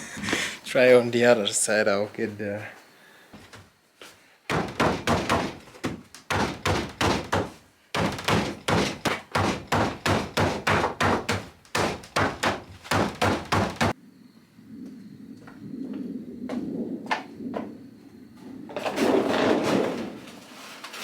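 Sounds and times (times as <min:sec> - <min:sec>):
hammering on aluminium sheet: 0:04.5 - 0:14.0.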